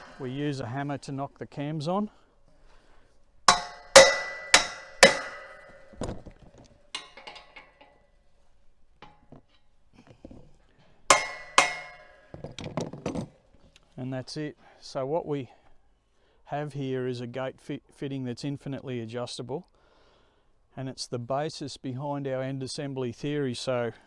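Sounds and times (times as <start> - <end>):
hammer striking metal: 0.0 - 0.4, 3.5 - 6.2, 7.0 - 7.9, 11.1 - 12.4.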